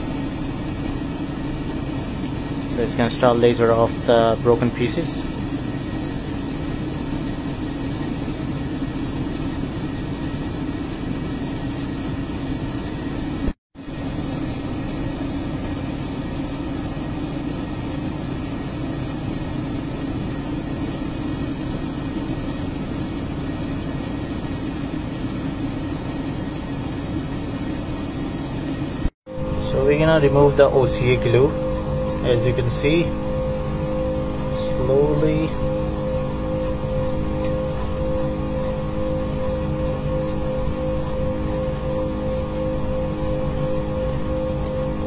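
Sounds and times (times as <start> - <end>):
laser machine humming: 0.0 - 45.0.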